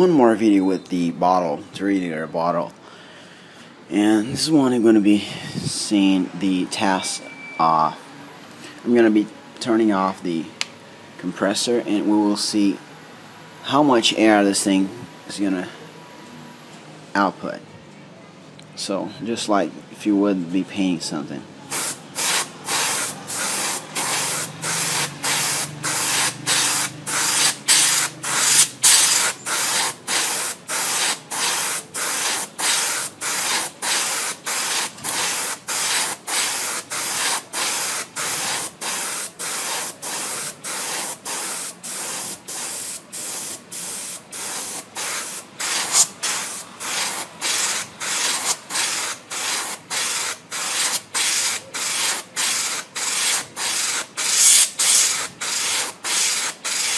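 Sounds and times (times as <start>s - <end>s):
airbrush hiss bursts: 21.7s - 56.9s.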